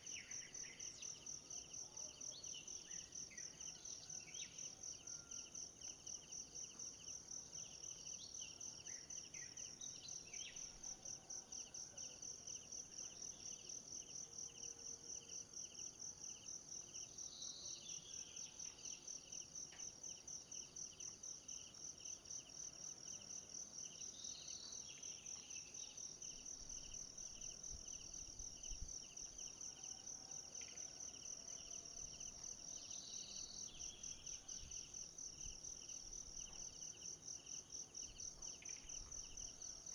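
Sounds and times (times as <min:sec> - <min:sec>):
lower pulsing insect voice: 0:12.5 - 0:39.9.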